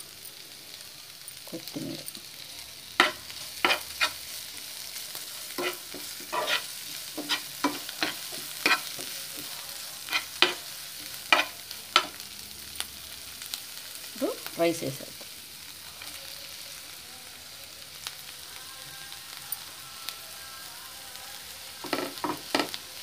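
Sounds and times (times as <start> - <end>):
vegetables sizzling in pan: 0.0 - 23.0
spoon clinking and scraping pan: 3.0 - 4.2, 5.5 - 12.2.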